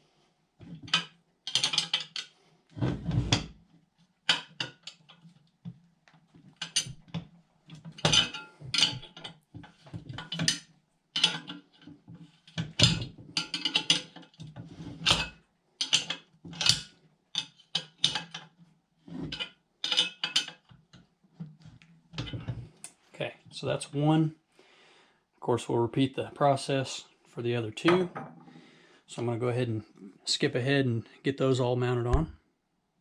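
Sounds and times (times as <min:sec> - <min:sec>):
metal clinks and scraping: 0:07.8 - 0:09.4.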